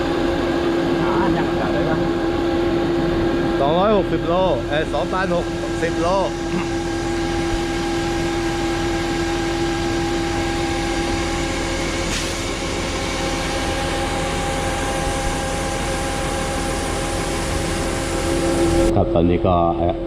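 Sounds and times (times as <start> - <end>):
truck unloading machinery droning: 2.0 - 19.0.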